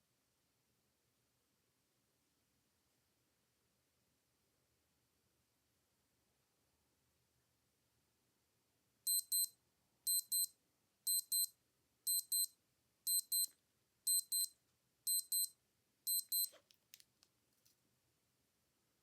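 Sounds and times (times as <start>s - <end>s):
digital watch alarm beeping: 9.1s - 9.5s, 10.1s - 10.5s, 11.1s - 11.5s, 12.1s - 12.5s, 13.1s - 13.5s, 14.1s - 14.5s, 15.1s - 15.5s, 16.1s - 16.5s.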